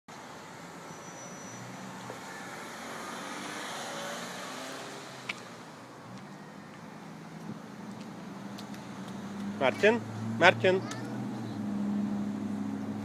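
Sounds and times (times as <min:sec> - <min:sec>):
motor vehicle passing by: 0:00.5 - 0:13.0.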